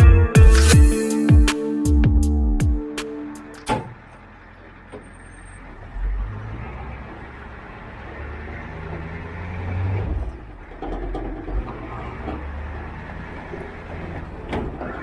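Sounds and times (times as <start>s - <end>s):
diesel engine rumbling under load: 3.2s - 15.0s.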